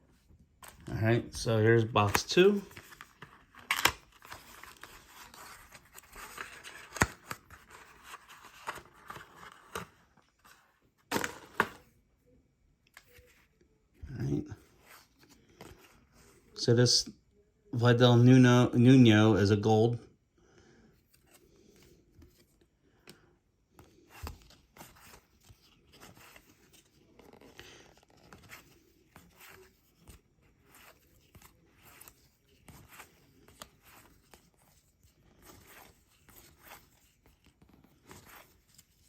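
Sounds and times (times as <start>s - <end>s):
trading cards rustling: 0.6s - 11.9s, 23.8s - 39.0s.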